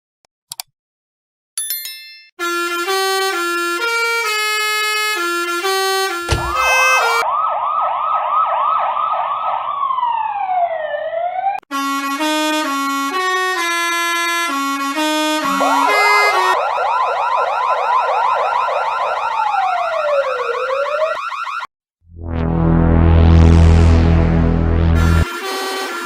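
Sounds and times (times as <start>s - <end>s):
horn playing a tune: 2.4s - 7.2s, 11.7s - 17.0s, 22.3s - 26.0s
lower-pitched horn tune: 2.4s - 7.2s, 11.7s - 18.3s, 22.2s - 26.0s
police siren yelp and wail: 6.4s - 11.6s, 15.4s - 21.7s.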